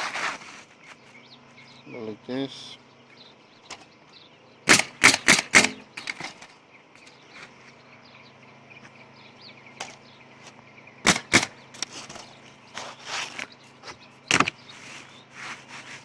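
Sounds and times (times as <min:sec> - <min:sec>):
nails driven into roof shingles: 0:04.6 - 0:06.5, 0:11.0 - 0:12.2, 0:14.3 - 0:14.6.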